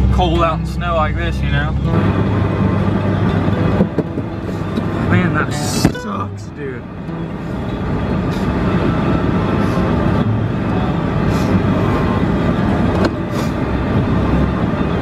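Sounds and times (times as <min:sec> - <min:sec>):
diesel engine running loud: 0:00.0 - 0:15.0.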